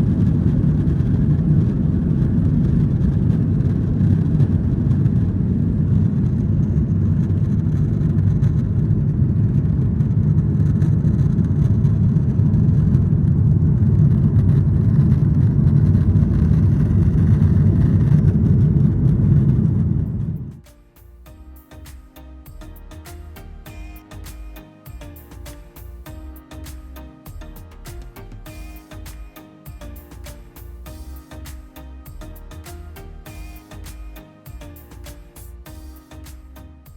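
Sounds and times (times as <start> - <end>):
jet engines and airflow rumble: 0.0 - 20.8.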